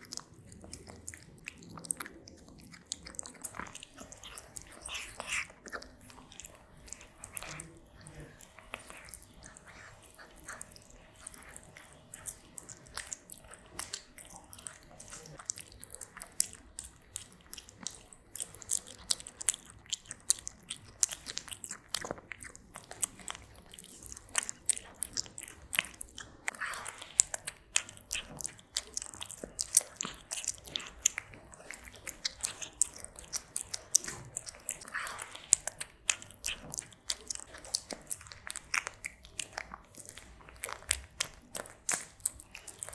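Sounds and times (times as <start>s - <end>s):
cat chewing food: 0.0s - 42.9s.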